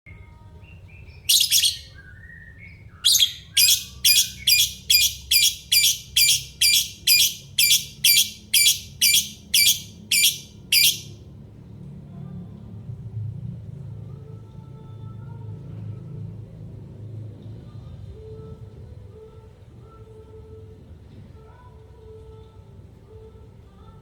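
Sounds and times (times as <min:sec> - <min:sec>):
lovebird chirps: 0:01.1 - 0:02.0, 0:03.0 - 0:11.1
lovebird harsh shrieks: 0:01.3 - 0:01.9, 0:03.1 - 0:11.1.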